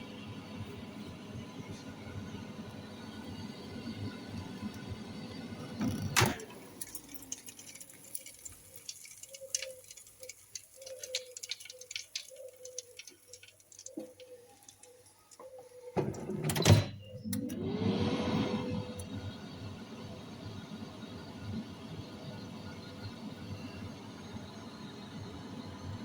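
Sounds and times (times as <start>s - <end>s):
small clicks: 5.8s - 15.8s.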